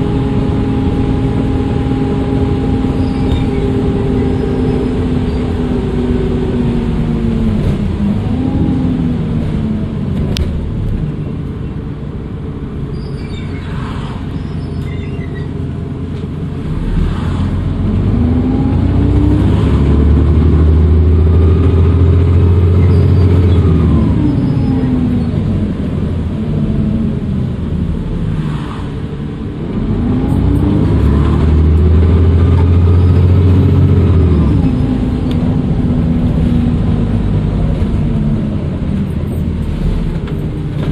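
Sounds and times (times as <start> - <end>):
bus diesel engine pulling away: 0.0 - 40.9
faint turbo whistle: 2.8 - 5.6.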